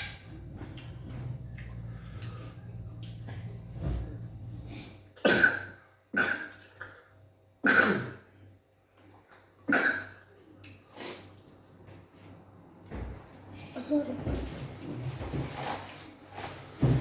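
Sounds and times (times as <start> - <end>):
person coughing: 7.6 - 8.3.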